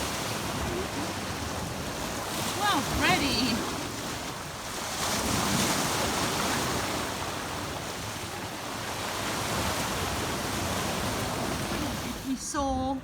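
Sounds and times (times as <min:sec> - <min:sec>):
sea waves washing onto shore: 0:00.0 - 0:13.0.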